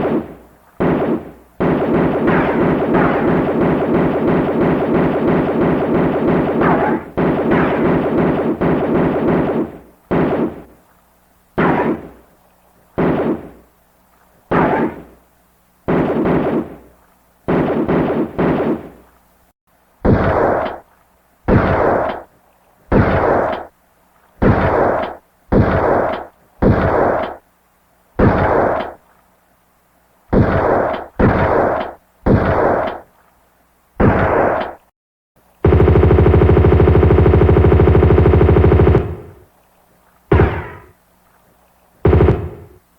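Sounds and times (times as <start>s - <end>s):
automatic gunfire: 0.0s - 10.7s, 11.6s - 12.2s, 13.0s - 13.6s, 14.5s - 15.2s, 15.9s - 16.9s, 17.5s - 19.0s, 20.0s - 20.8s, 21.5s - 22.3s, 22.9s - 23.7s, 24.4s - 27.4s, 28.2s - 29.0s, 30.3s - 33.1s, 34.0s - 34.8s, 35.6s - 39.4s, 40.3s - 41.0s, 42.0s - 42.8s
single gunshots: 0.0s - 10.7s, 11.6s - 12.2s, 13.0s - 13.6s, 14.5s - 15.2s, 15.8s - 16.9s, 17.5s - 19.0s, 20.0s - 20.9s, 21.5s - 22.3s, 22.9s - 23.7s, 24.4s - 27.4s, 28.2s - 29.0s, 30.3s - 33.1s, 34.0s - 34.8s, 40.3s - 41.0s, 42.0s - 42.8s.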